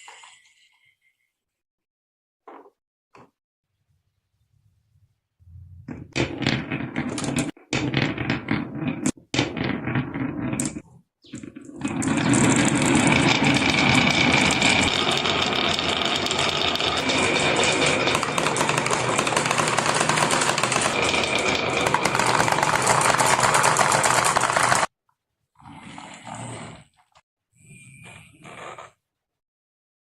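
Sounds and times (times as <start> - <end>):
marbles clattering down track: 6.2 - 10.8, 11.6 - 24.9.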